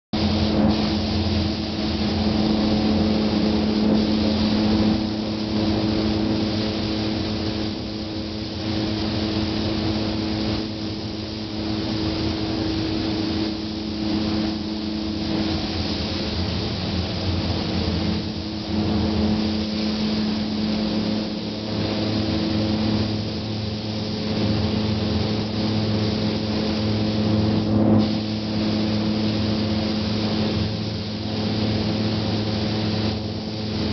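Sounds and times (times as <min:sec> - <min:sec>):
steady motor hum: 0:00.0 - 0:33.9
spray gun hissing: 0:00.2 - 0:33.9.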